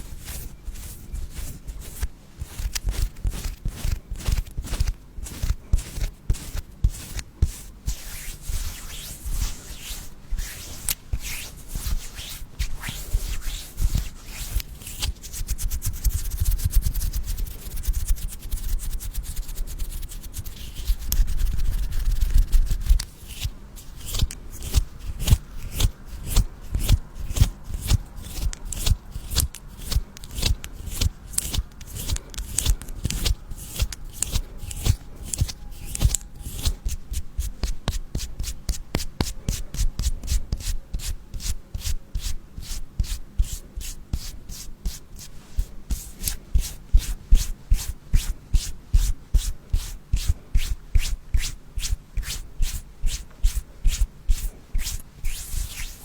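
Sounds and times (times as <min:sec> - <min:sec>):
rubbing and scraping: 0:00.0 - 0:37.7, 0:52.2 - 0:56.0.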